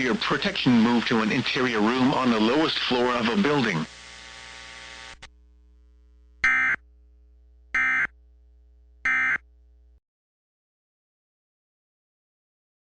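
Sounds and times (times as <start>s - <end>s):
low steady hum: 3.9s - 10.0s.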